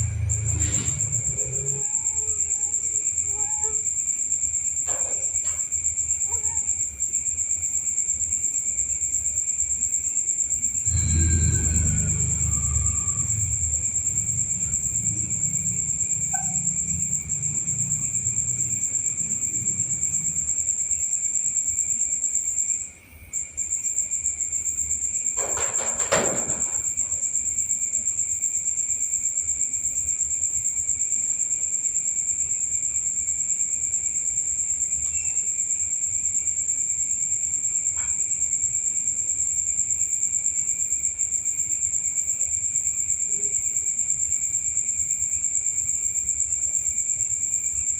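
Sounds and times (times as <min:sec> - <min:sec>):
short noisy burst: 0:00.0 - 0:01.6, 0:10.8 - 0:16.4
low rumble: 0:00.0 - 0:01.7, 0:10.8 - 0:19.5
crickets trilling: 0:00.0 - 0:47.9.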